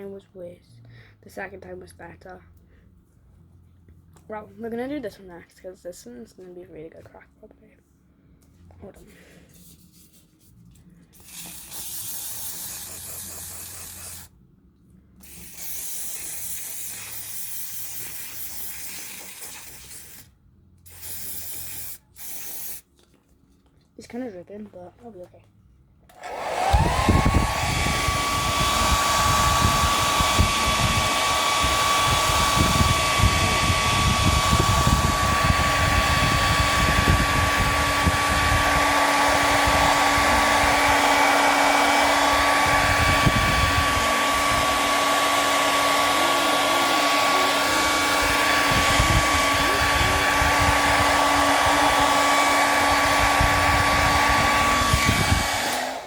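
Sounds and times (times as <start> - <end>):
hair dryer running: 26.1 - 56.0
wind buffeting on microphone: 26.8 - 38.9, 42.6 - 44.7, 48.7 - 51.2, 53.1 - 55.6.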